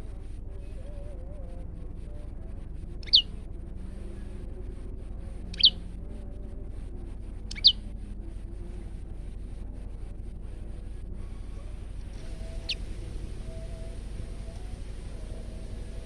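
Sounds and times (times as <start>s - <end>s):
bird whistle calls: 3.0s - 3.3s, 5.5s - 5.8s, 7.5s - 7.8s, 12.4s - 12.9s.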